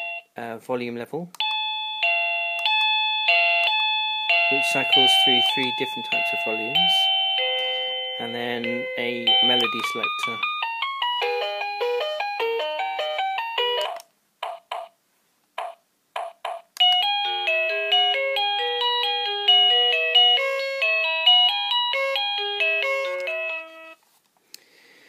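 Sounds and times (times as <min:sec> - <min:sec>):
electronic doorbell chime melody: 0:00.0 - 0:00.3, 0:01.4 - 0:14.0, 0:16.8 - 0:24.0.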